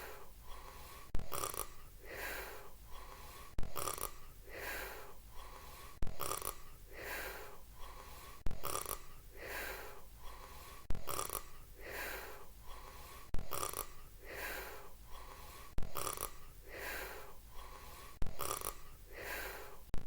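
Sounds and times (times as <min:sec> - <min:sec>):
cartoon snoring: 0:01.2 - 0:01.8, 0:03.6 - 0:04.2, 0:06.0 - 0:06.6, 0:08.5 - 0:09.1, 0:10.9 - 0:11.5, 0:13.4 - 0:14.0, 0:15.8 - 0:16.4, 0:18.2 - 0:18.8.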